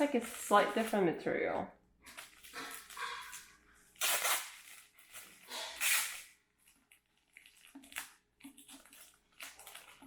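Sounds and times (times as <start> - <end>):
packaging rustling: 2.1 - 10.0.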